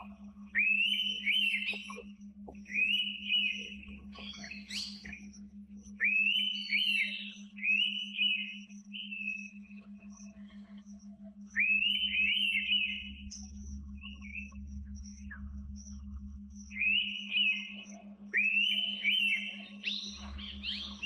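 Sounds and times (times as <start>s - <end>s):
bird whistled calls: 0.0s - 5.2s, 6.0s - 9.6s, 11.6s - 13.1s, 16.8s - 21.0s
steady low hum: 0.0s - 21.0s.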